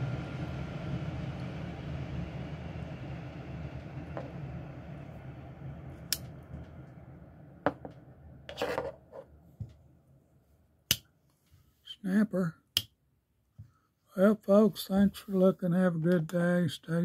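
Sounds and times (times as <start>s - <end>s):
low rumble: 0.0s - 8.5s.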